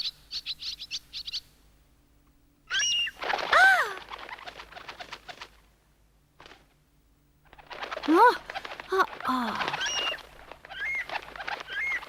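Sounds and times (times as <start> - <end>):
bird call rising and falling: 2.7 - 4.0
wings flapping: 2.8 - 5.7, 6.4 - 6.8, 7.4 - 12.0.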